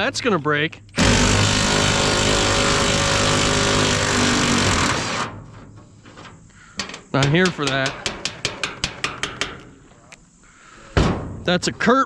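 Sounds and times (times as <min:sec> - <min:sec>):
power tool running: 0:01.0 - 0:05.4.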